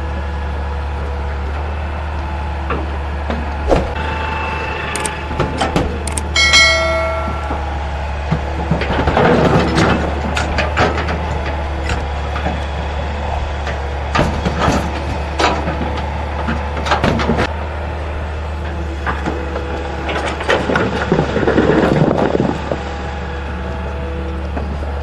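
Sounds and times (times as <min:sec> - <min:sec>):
diesel engine running: 0:00.0 - 0:25.0
machine clanks and knocks: 0:05.0 - 0:12.6.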